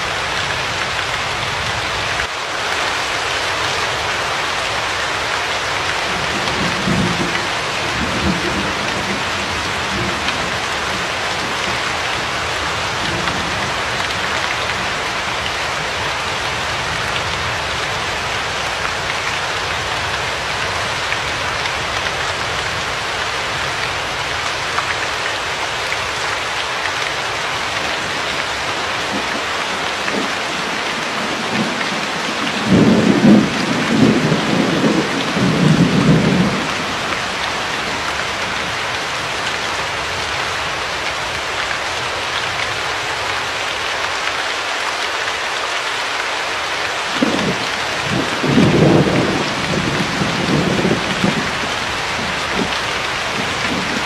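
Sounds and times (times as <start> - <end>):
steady rain: 0.0 - 54.0
thunder rumbling: 6.0 - 16.0, 28.0 - 38.7, 47.1 - 54.0.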